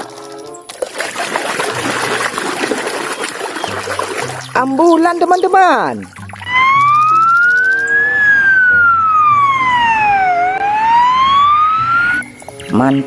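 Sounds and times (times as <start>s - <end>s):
ambulance siren wailing: 6.4s - 12.4s.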